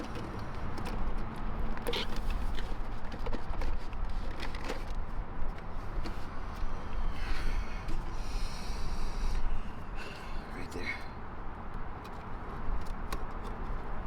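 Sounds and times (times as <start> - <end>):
small clicks and rustling: 0.0 - 6.7, 11.7 - 14.0
steady low rumble: 5.8 - 11.6.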